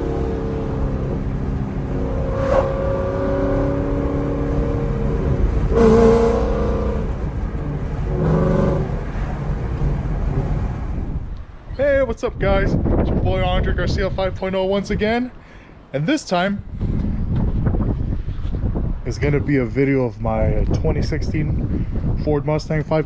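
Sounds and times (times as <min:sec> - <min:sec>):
car engine idling: 0:00.0 - 0:11.4.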